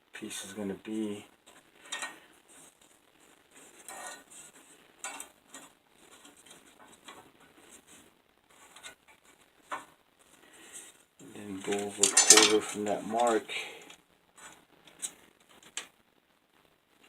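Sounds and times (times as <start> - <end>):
scratching on steel bar: 3.5 - 7.9, 11.4 - 13.4.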